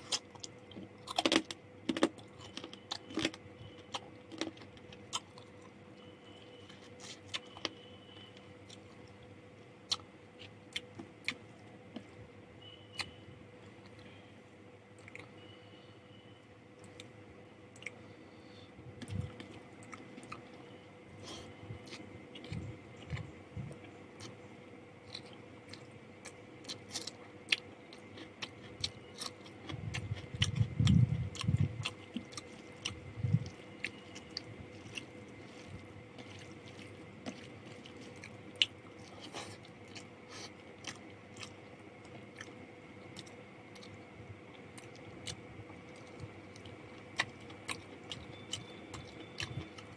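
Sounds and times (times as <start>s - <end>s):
chewing and biting food: 0.0s - 5.8s, 21.2s - 24.4s, 25.0s - 49.9s
low thumping chews: 25.0s - 49.9s.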